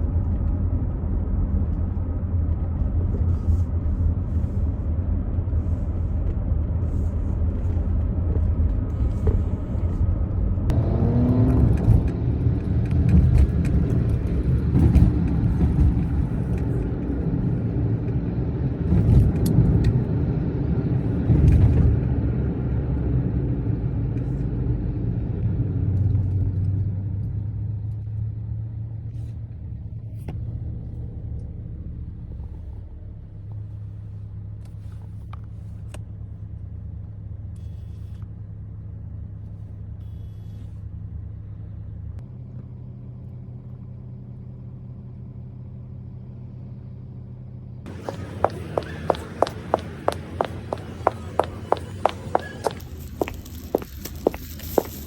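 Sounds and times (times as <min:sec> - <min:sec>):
vehicle engine running: 0:27.2 - 0:55.0.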